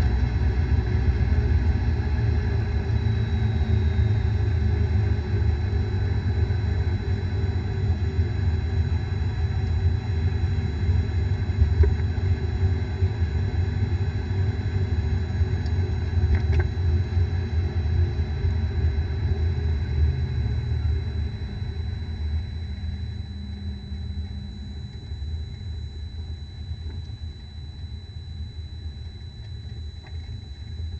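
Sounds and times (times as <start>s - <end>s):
car bearing rumbling drone: 15.2s - 16.8s, 18.2s - 30.9s.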